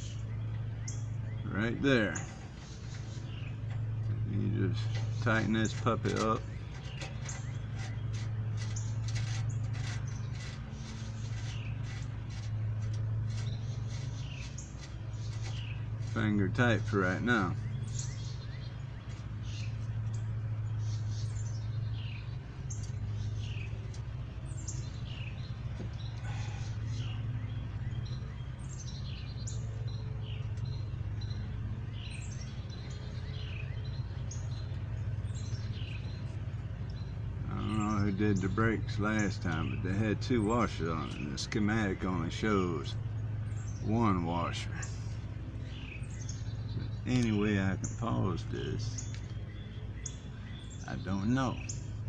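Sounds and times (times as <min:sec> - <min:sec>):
birds chirping: 0:00.0 - 0:52.0
low hum: 0:00.0 - 0:52.0.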